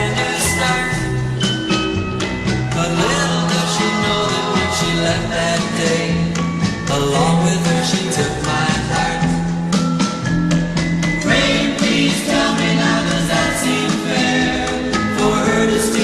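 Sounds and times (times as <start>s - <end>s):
harmonising backing voices: 0.0s - 1.6s, 2.7s - 9.5s, 11.2s - 16.0s
pop song vocal: 0.0s - 1.6s, 2.7s - 9.8s, 11.2s - 16.0s
guitar: 0.0s - 16.0s
steady beat: 2.8s - 7.1s.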